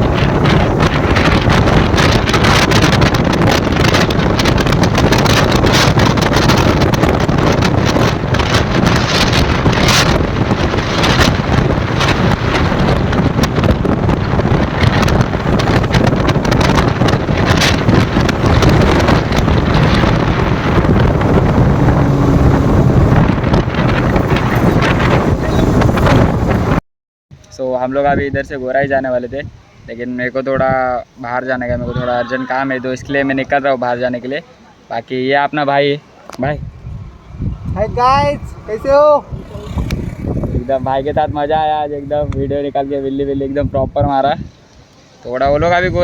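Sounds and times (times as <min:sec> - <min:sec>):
motorcycle and road noise: 0:00.0 - 0:26.8, 0:35.4 - 0:43.4
wind buffeting microphone: 0:00.0 - 0:26.8, 0:27.4 - 0:34.0, 0:35.7 - 0:46.0.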